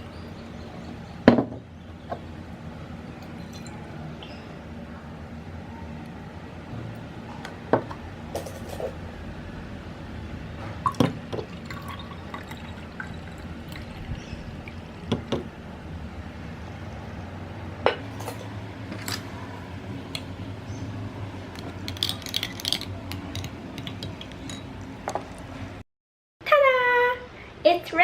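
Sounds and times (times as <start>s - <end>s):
steady low hum: 0.0s - 25.8s
glassware and dishes clinking: 3.4s - 3.8s
liquid pouring: 10.8s - 15.3s.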